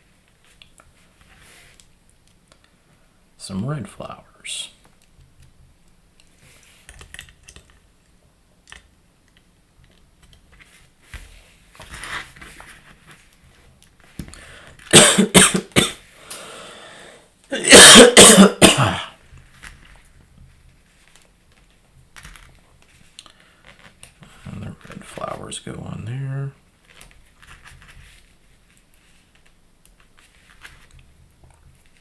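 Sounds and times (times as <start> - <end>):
man coughing: 14.9 - 16.0, 17.5 - 19.2.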